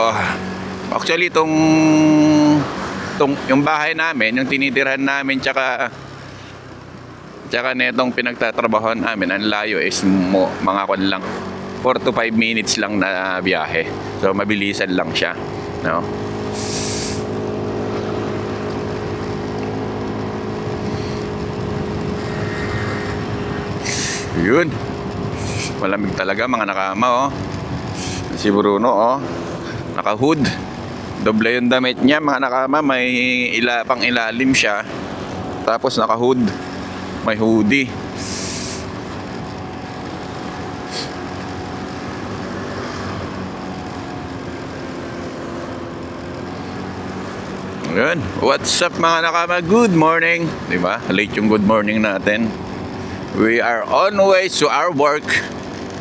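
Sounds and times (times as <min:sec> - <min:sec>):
motorcycle engine running: 0:00.0 - 0:56.0
road noise: 0:00.0 - 0:56.0
brief hiss: 0:16.6 - 0:17.2.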